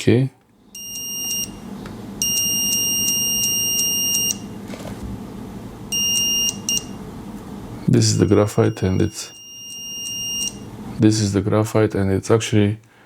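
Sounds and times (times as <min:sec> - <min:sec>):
multimeter continuity beep: 0:00.8 - 0:04.5, 0:05.9 - 0:07.0, 0:08.0 - 0:10.8.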